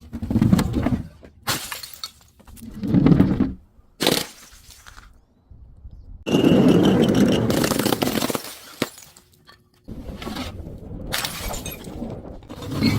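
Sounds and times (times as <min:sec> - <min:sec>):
glass bottle breaking: 0:01.5 - 0:02.3.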